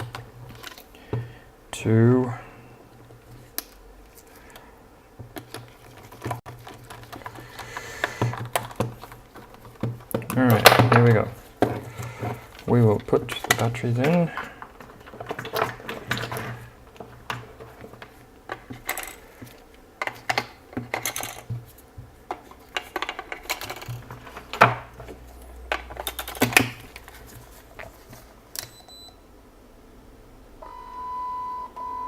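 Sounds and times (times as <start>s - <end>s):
electronic beep: 30.6s - 32.0s.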